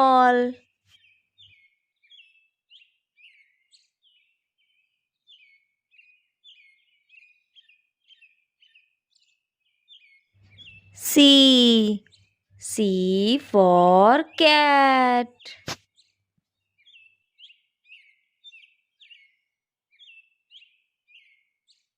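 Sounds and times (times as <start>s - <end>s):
faint bird chirping: 0.0s - 21.9s.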